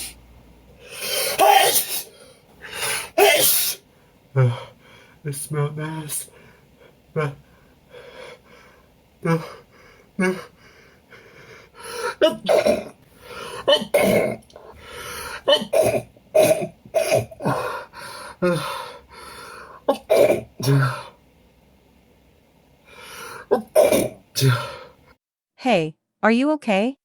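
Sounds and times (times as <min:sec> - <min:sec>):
man gasping: 0:00.8 - 0:05.2, 0:06.2 - 0:12.2, 0:17.3 - 0:19.8, 0:24.4 - 0:25.0
man sneezing: 0:00.9 - 0:03.8, 0:19.9 - 0:21.1, 0:23.4 - 0:24.9.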